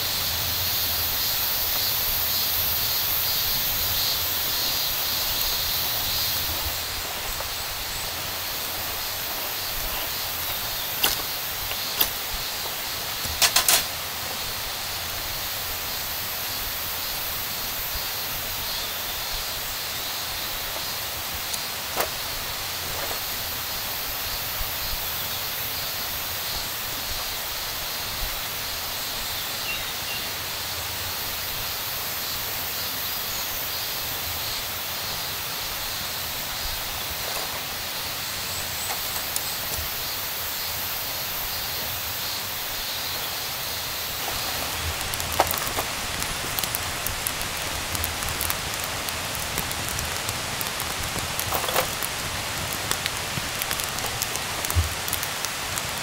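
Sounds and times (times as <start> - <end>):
insects chirring: 0.0 - 56.0
rain pattering: 0.0 - 56.0.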